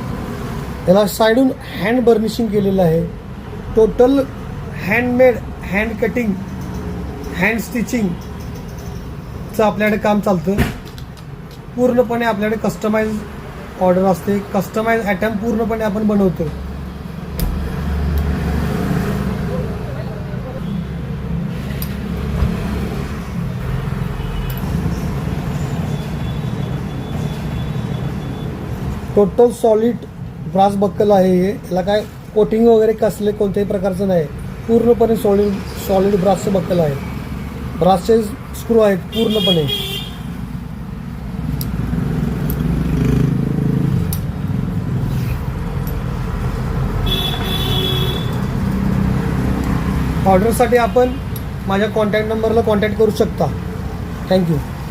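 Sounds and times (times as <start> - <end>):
road traffic rumble: 0.0 - 54.9
vehicle engine passing: 16.2 - 29.1, 40.4 - 47.0.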